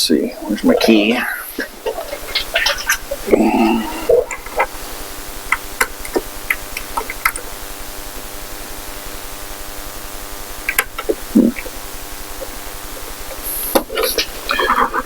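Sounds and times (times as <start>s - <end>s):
electrical hum: 0.0s - 15.0s.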